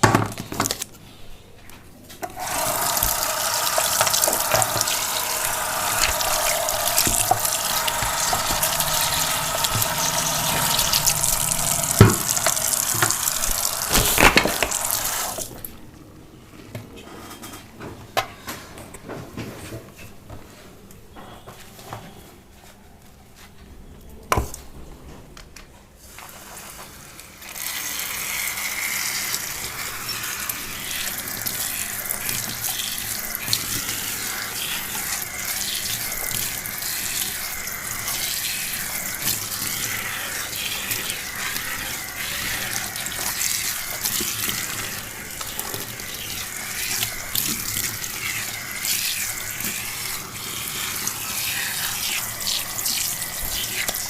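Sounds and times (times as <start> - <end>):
water running from a tap: 2.2 - 15.7, 27.4 - 54.0.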